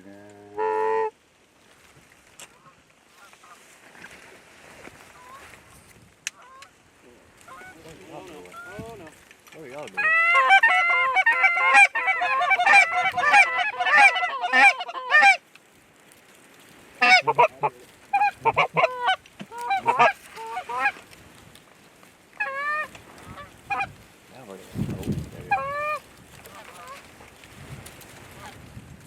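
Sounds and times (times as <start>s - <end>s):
geese honking: 0.4s - 1.2s, 5.2s - 5.5s, 6.3s - 6.8s, 7.4s - 8.9s, 9.9s - 15.4s, 17.0s - 21.1s, 22.4s - 24.0s, 25.4s - 27.3s.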